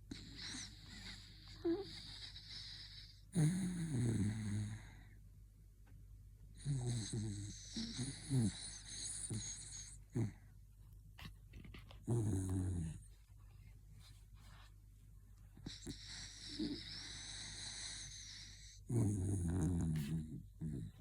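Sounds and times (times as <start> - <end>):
dog snoring: 0.1 - 5.1, 6.6 - 10.5, 12.0 - 13.1, 15.6 - 21.0.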